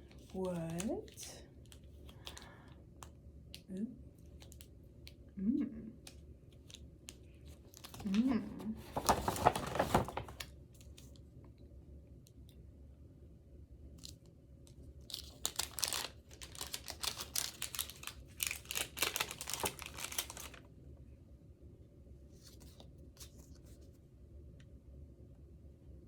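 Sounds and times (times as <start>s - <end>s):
wrapping paper tearing and crinkling: 7.5s - 11.0s, 15.0s - 20.6s
paper rustling: 7.5s - 11.1s, 15.1s - 20.6s, 22.3s - 24.0s.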